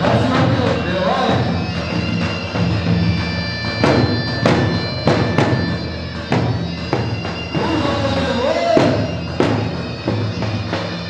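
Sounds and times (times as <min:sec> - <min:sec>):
music with sustained tones: 0:00.0 - 0:11.0
loud drum strikes: 0:03.8 - 0:10.3.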